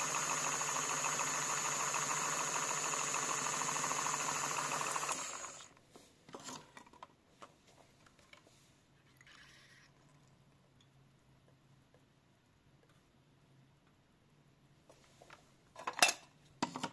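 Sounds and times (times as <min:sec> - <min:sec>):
washing machine motor whine: 0:00.0 - 0:05.7.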